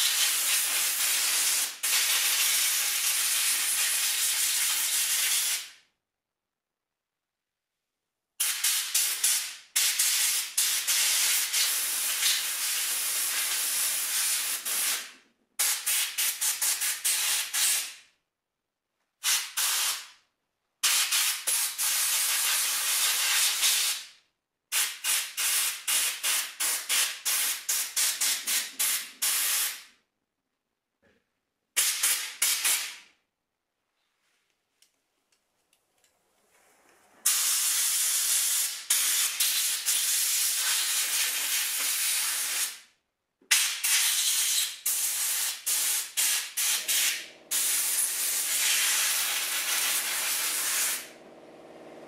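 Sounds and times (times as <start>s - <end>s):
pressurised spray hissing: 37.2s - 42.8s, 43.9s - 51.1s.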